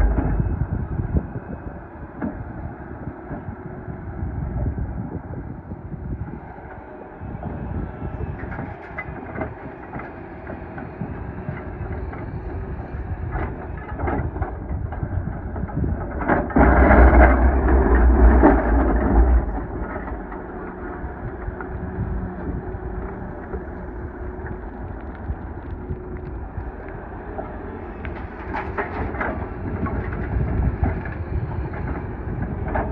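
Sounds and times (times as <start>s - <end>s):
excavator engine and hydraulics: 0.0s - 32.9s
loud rumbling rush: 0.0s - 32.9s
knocks and rattles: 14.0s - 22.6s.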